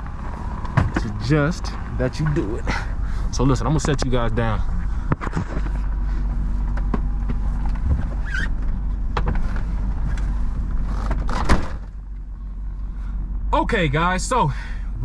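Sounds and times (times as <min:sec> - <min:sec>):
pickup truck idling: 0:00.0 - 0:11.1.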